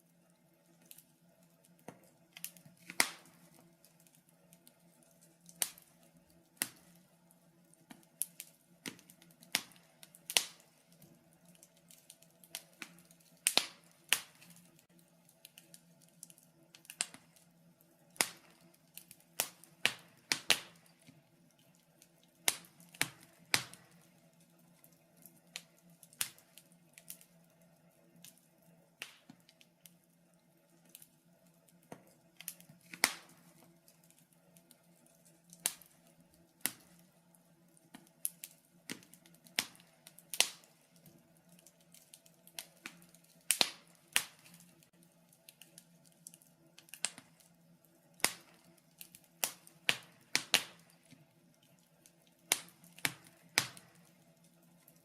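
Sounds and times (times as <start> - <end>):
wood fire crackling in fireplace: 0.0 - 55.0.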